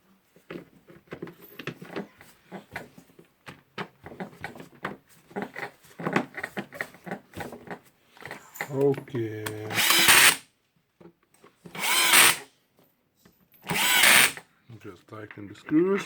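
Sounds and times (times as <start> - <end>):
screws rattling on plastic housing: 9.5 - 10.4, 11.7 - 12.4, 13.6 - 14.4.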